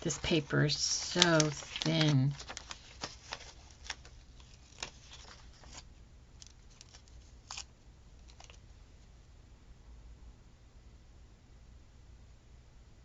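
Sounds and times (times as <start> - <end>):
paper crackles: 0.0 - 8.6
paper stickers rustling and peeling: 0.0 - 8.6.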